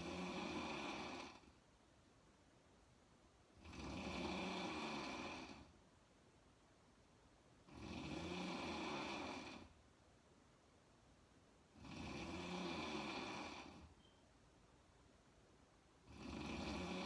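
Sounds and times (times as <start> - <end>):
quiet breathing: 0.0 - 1.6, 3.5 - 5.8, 11.7 - 14.3
woman snoring: 0.0 - 1.6, 3.6 - 5.7, 7.7 - 9.8, 11.8 - 13.9, 16.0 - 17.0.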